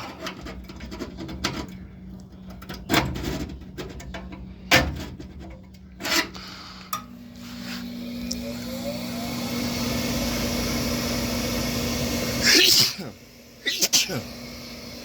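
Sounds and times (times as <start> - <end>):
knocks and scrapes on metal housing: 0.0 - 6.4
second steady hum: 4.1 - 15.0.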